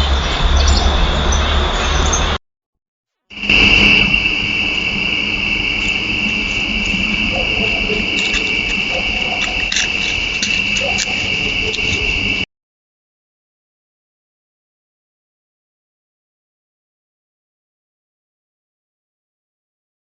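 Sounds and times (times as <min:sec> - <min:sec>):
insects trilling: 0:03.3 - 0:12.5.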